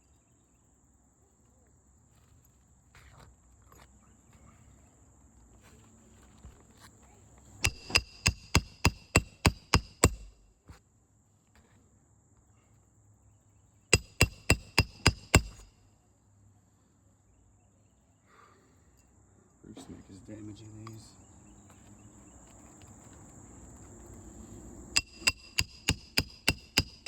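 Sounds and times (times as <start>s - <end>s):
hammer striking metal: 7.6s - 10.4s, 14.0s - 15.7s, 25.0s - 27.0s.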